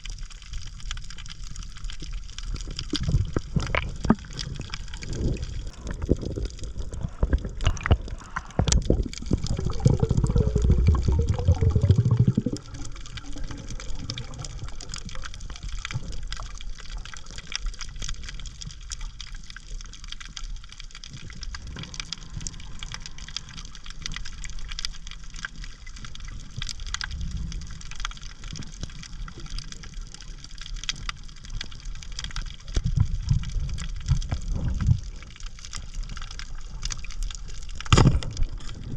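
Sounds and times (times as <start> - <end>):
fine crackle: 0.0 - 38.9
water sloshing and gurgling: 0.0 - 38.9
low rush of water: 3.0 - 16.5.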